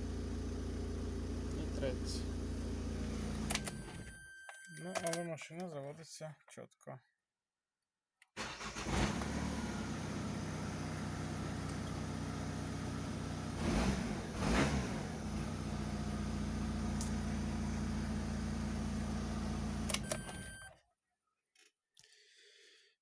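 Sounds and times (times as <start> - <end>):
diesel engine idling: 0.0 - 3.5, 9.2 - 14.4
engine revving blips: 8.7 - 20.7.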